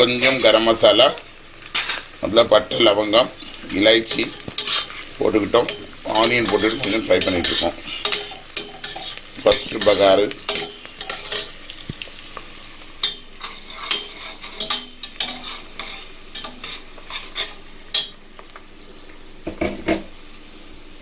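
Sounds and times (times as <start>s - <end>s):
onion sizzling in hot oil: 0.0s - 21.0s
spoon scraping and clinking pan: 4.1s - 11.6s, 13.0s - 18.2s.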